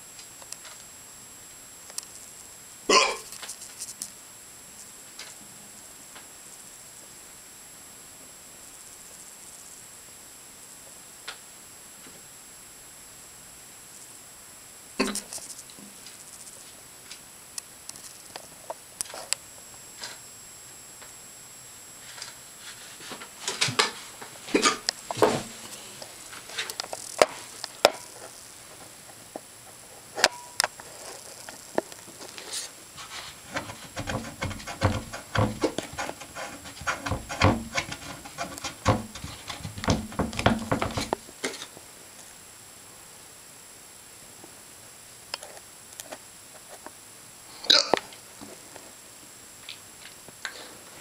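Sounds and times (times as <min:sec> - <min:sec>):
cat hiccuping: 0:02.9 - 0:03.3, 0:47.7 - 0:48.0.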